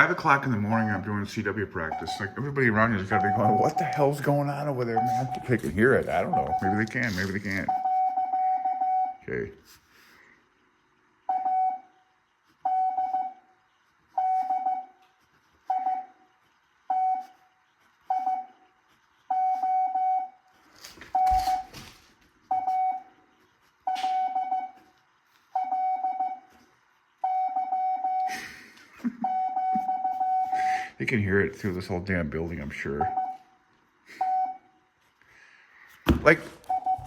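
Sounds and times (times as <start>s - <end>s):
morse code beeps: 0.0s - 9.3s, 11.3s - 11.9s, 12.6s - 13.4s, 14.2s - 15.0s, 15.7s - 16.2s, 16.9s - 17.4s, 18.1s - 18.6s, 19.3s - 20.4s, 22.5s - 23.2s, 23.9s - 24.8s, 25.5s - 26.5s, 27.2s - 28.4s, 29.0s - 30.9s, 32.7s - 34.8s, 36.6s - 37.0s.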